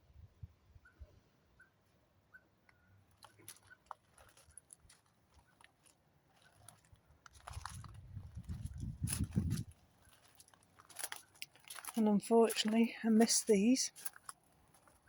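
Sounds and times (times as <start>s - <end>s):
footsteps crunching on path: 3.1s - 15.0s.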